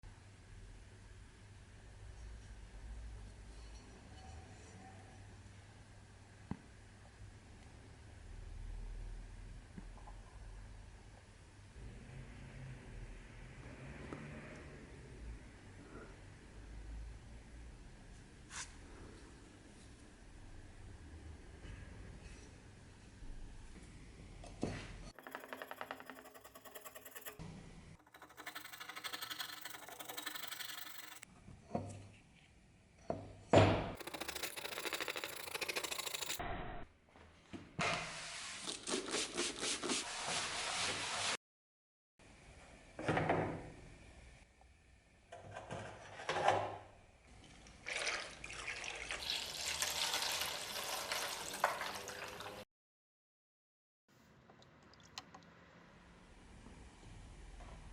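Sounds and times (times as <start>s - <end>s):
metal parts knocking: 25.2s - 27.4s, 34.0s - 36.4s.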